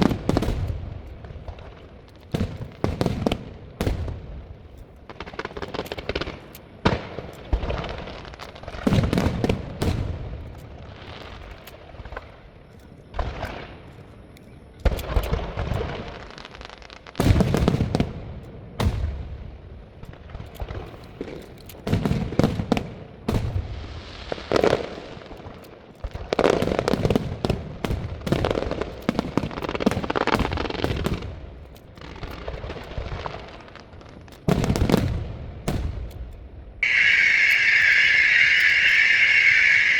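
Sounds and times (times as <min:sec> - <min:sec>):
fireworks booming bursts: 0:00.0 - 0:12.4, 0:14.8 - 0:39.9
fireworks crackling: 0:00.0 - 0:39.9
sharp bangs: 0:36.8 - 0:39.9.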